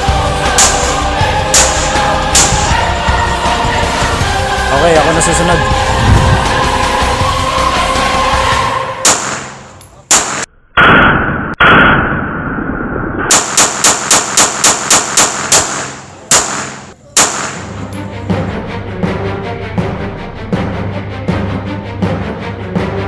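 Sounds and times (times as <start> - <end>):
pistol gunshots: 1.6 - 2.7, 9.0 - 12.0, 13.3 - 17.8.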